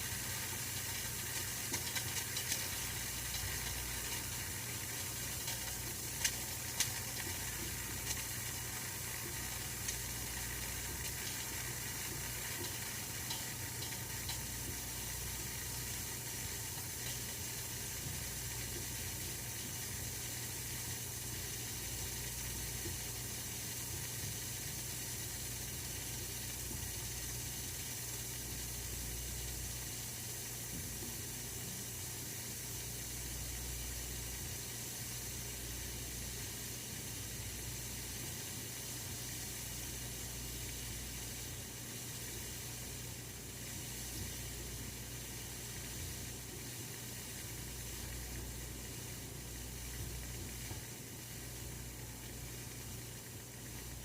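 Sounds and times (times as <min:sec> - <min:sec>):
radiator heater hissing: 0:00.0 - 0:54.0.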